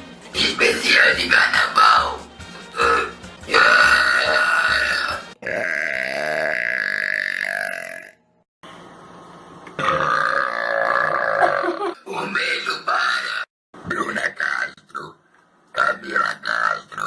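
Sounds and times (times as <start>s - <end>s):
woman burping: 5.4s - 8.2s, 9.8s - 12.0s.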